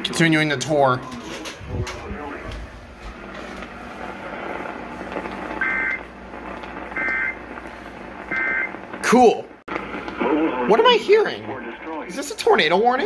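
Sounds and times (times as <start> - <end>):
radio hiss: 1.4 - 13.0.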